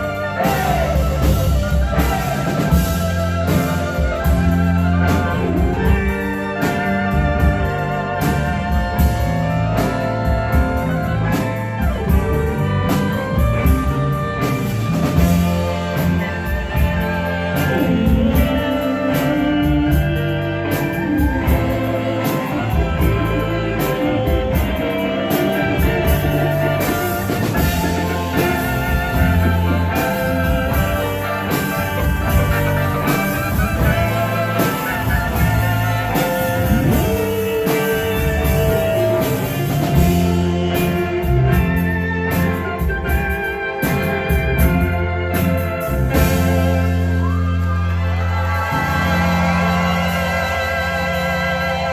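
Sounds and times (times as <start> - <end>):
band playing rock song: 0.0 - 51.9.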